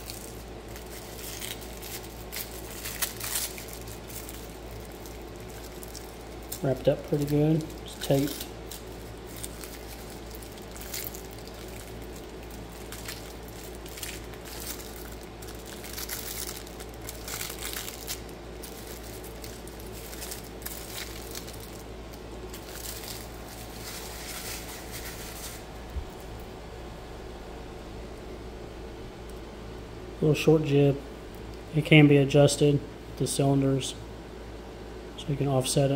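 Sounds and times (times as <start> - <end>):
taped wrapping peeled and crinkled: 0.0 - 26.5.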